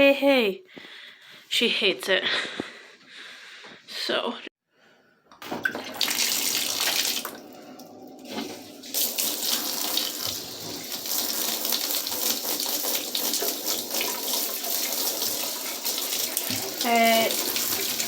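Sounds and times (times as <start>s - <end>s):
water pouring into bathtub: 5.4s - 18.0s.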